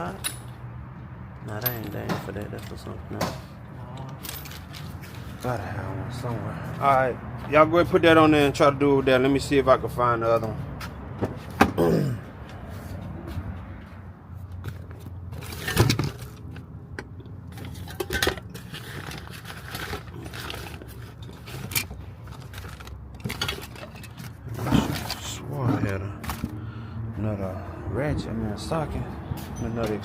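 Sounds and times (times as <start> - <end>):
metal tools clinking and rattling: 0.0 - 0.6, 1.4 - 5.5, 14.7 - 26.6, 29.4 - 30.0.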